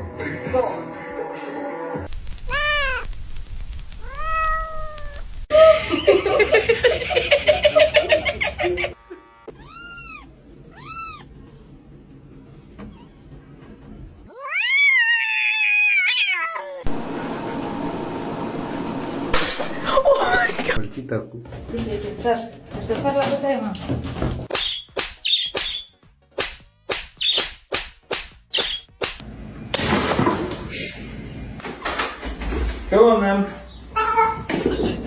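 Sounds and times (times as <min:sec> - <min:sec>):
cat yowling: 0:02.4 - 0:03.1, 0:04.0 - 0:05.3, 0:09.5 - 0:11.3, 0:14.3 - 0:16.9
cats meowing: 0:02.4 - 0:03.2, 0:04.0 - 0:05.4, 0:09.5 - 0:11.3, 0:14.3 - 0:16.9.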